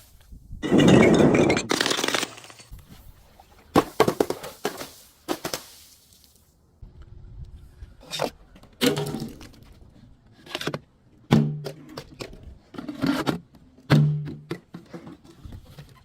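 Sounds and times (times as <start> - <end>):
objects smashing with ringing: 0.6 - 2.7.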